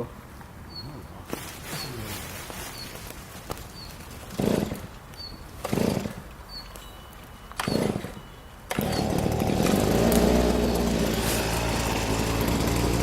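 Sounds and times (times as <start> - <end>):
small petrol engine running: 7.6 - 13.0.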